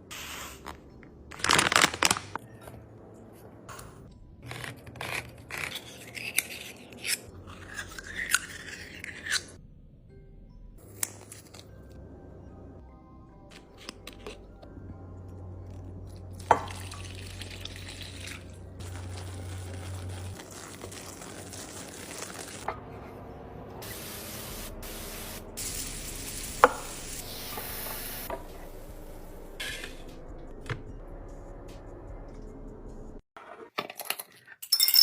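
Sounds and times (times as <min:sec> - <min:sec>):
low hum: 0:22.5 - 0:33.2
hiss like spraying water: 0:23.8 - 0:28.3.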